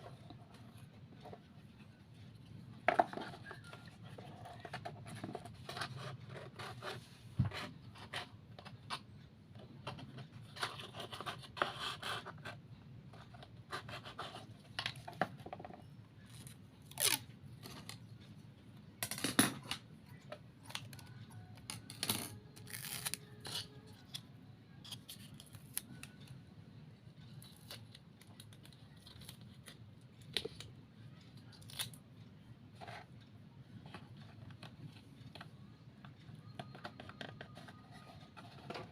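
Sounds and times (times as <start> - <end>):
low steady background hum: 0.0 - 38.9
clicks taps and scraping: 32.8 - 38.9.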